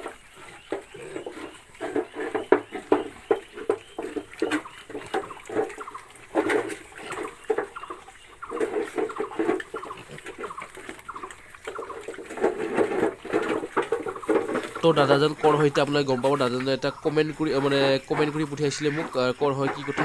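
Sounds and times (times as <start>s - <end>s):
pigs grunting: 0.0s - 20.0s
pigs squealing: 0.0s - 20.0s.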